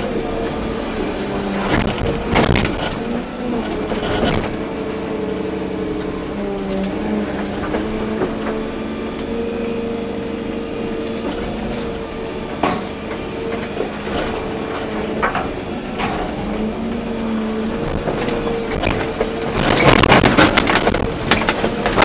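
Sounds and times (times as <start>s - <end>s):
excavator engine and hydraulics: 0.0s - 22.0s
machine knocks and clanks: 17.8s - 22.0s.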